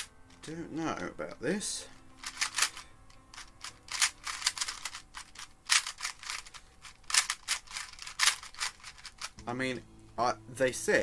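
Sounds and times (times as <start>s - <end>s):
puzzle cube plastic clicks: 2.2s - 9.4s.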